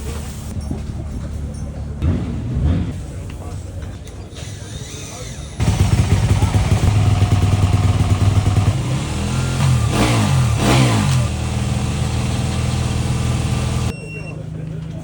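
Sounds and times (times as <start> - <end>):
motocross bike engine running: 5.6 - 13.9.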